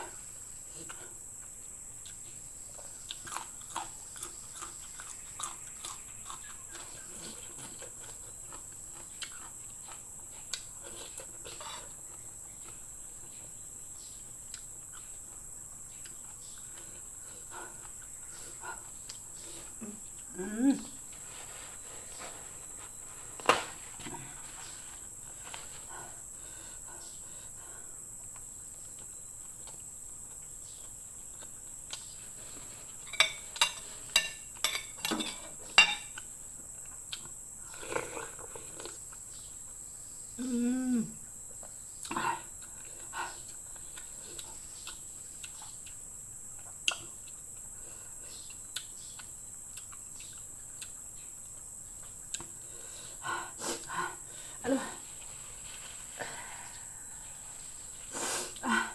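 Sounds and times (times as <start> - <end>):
person humming: 19.8 - 21.0, 40.4 - 41.2, 54.6 - 55.0
utensils clinking on dishes: 33.1 - 36.2
high-pitched hiss: 52.6 - 58.9.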